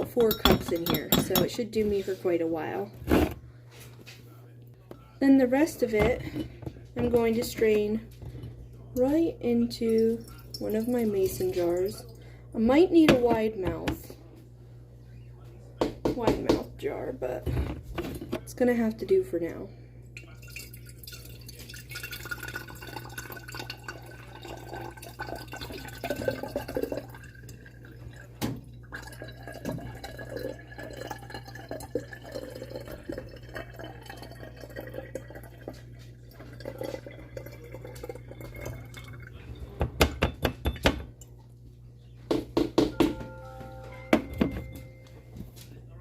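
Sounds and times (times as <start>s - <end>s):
liquid trickling into a jar: 9.8s - 12.2s, 20.2s - 39.8s
faint rising ringing tone: 43.0s - 45.5s.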